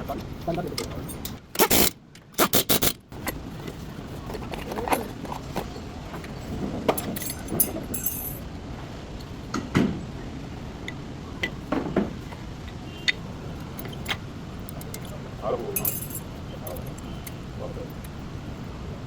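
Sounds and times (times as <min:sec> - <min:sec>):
metal tools clinking and knocking: 0:00.7 - 0:01.9, 0:06.9 - 0:08.5, 0:15.8 - 0:17.1.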